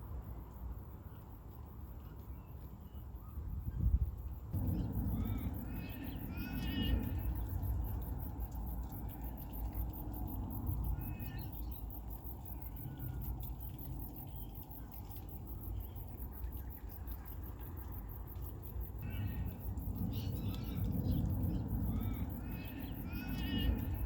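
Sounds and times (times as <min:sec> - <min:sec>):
insects chirping: 0:00.1 - 0:24.0
low steady rumble: 0:03.8 - 0:24.0
bird calling: 0:04.6 - 0:08.1, 0:19.0 - 0:24.0.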